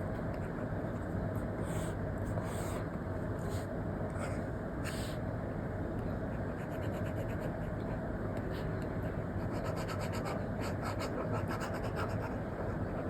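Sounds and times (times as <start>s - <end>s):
stylus scratching on screen: 9.4s - 12.4s.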